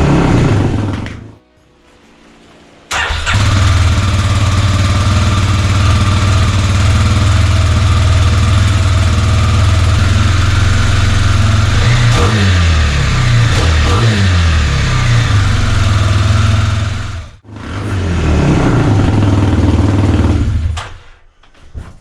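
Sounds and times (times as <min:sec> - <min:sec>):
motorcycle engine idling: 0:03.0 - 0:13.6.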